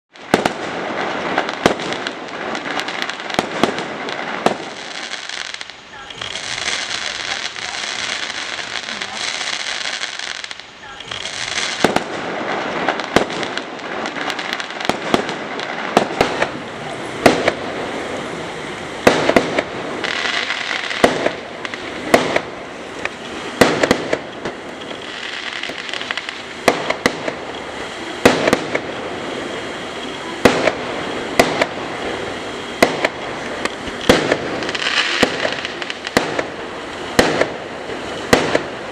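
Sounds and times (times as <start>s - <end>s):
firework bangs: 0.1s - 38.9s
fireworks crackling: 0.1s - 38.9s.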